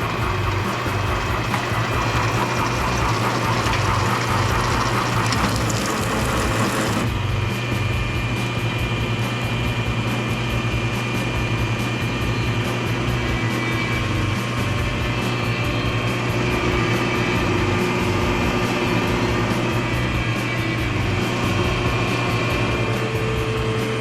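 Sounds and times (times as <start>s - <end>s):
machine humming: 0.0s - 7.2s.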